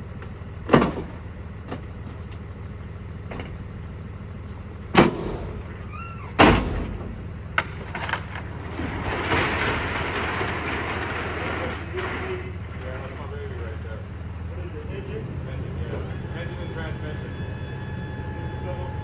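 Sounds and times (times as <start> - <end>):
truck engine idling: 0.0 - 19.0
loud bangs: 4.9 - 7.9.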